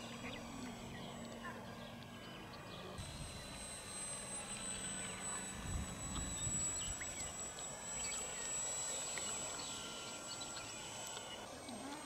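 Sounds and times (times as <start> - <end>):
model airplane motor whining: 0.0 - 12.0.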